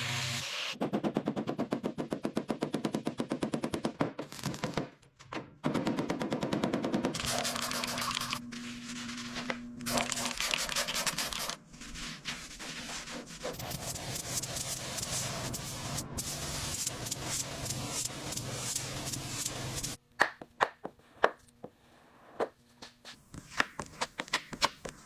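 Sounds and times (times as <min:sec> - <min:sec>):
rasping and hissing sanding: 0:07.3 - 0:20.0.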